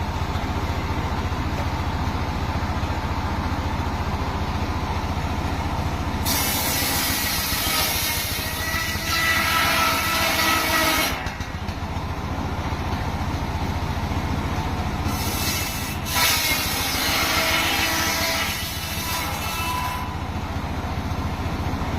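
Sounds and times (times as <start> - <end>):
saw engine running: 0.0 - 21.9
saw blade cutting wood: 6.2 - 11.6, 15.0 - 20.2.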